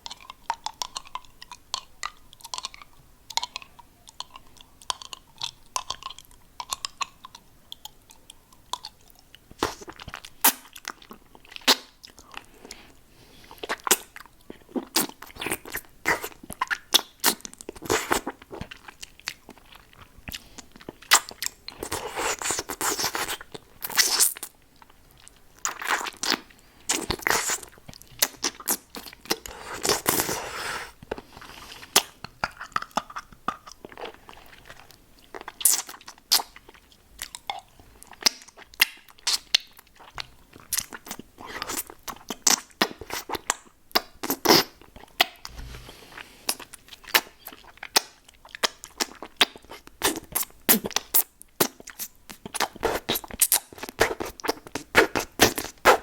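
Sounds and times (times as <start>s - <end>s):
mouth eating hard lollipop: 25.6s - 34.6s, 40.7s - 56.0s.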